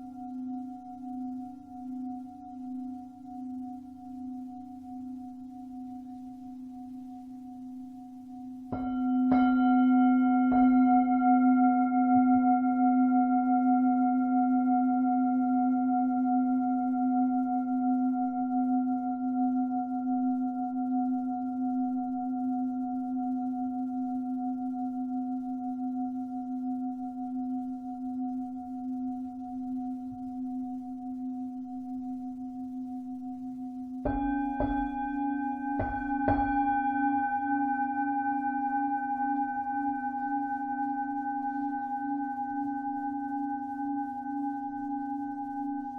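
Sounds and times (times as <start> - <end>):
singing bowl ringing hum: 0.0 - 45.9
singing bowl struck with mallet: 8.7 - 10.9, 34.0 - 38.6.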